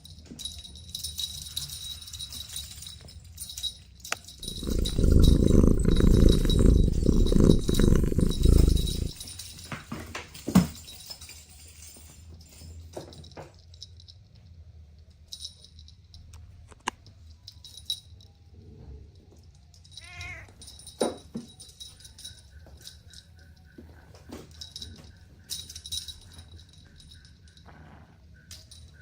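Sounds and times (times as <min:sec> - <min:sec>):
kitten mewing: 0:04.4 - 0:09.2, 0:20.0 - 0:20.5.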